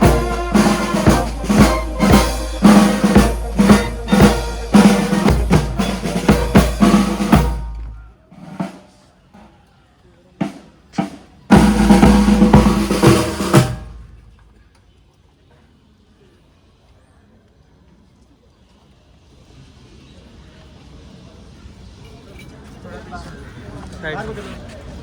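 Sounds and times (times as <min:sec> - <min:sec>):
drums playing a loud beat: 0:00.0 - 0:08.8, 0:10.4 - 0:14.3.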